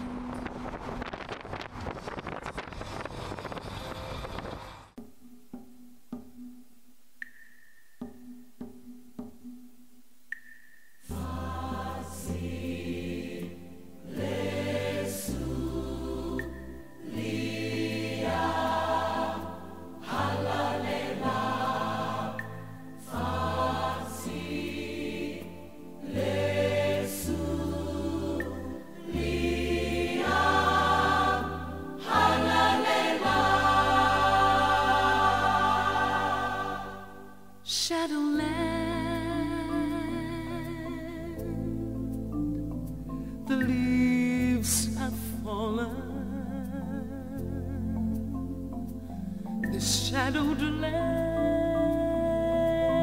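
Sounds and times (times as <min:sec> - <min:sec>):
choir singing: 0:11.1 - 0:37.7.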